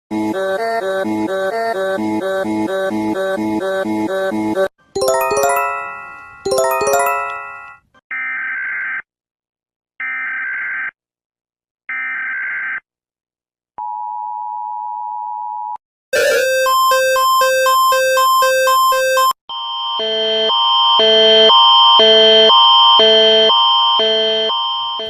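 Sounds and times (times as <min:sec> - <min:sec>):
chime strikes: 0:05.0 - 0:07.8
two-tone attention signal: 0:16.2 - 0:19.4
rapidly repeating alarm beeps: 0:16.4 - 0:25.0.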